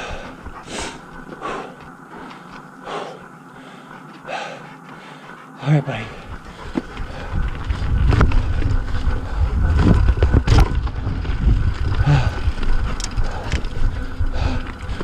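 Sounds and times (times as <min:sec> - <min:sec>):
low tyre rumble: 0:05.6 - 0:15.0
wind buffeting microphone: 0:06.0 - 0:15.0
bike clacking and rattling: 0:06.4 - 0:15.0.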